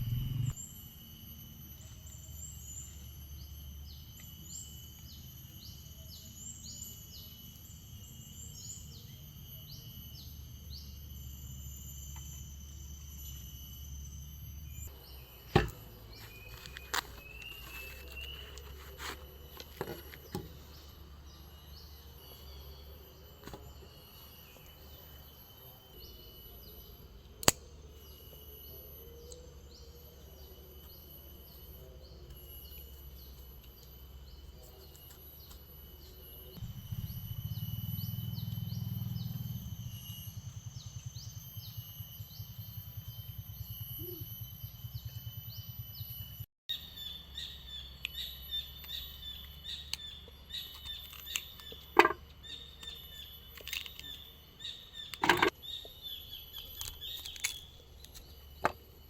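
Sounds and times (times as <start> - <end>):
low rumble: 0.0 - 0.6
insects trilling: 0.0 - 59.0
birds chirping: 13.2 - 27.0.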